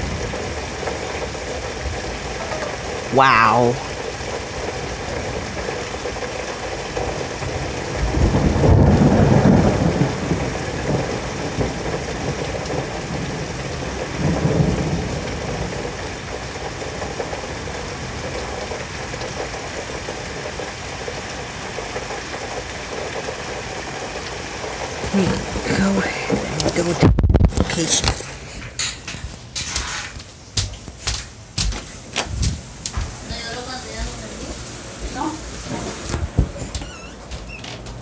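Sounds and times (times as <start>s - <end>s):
heavy rain: 0.0s - 38.0s
thunder rumble: 3.8s - 19.4s, 24.7s - 28.7s, 35.5s - 36.7s.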